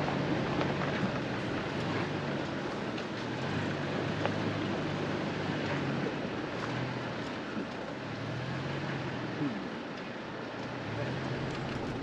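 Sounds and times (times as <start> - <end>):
car engine and tyre rumble: 0.0 - 12.0.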